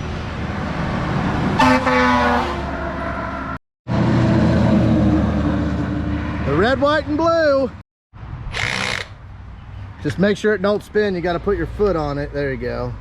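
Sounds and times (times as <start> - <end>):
truck horn blast: 1.6 - 2.6.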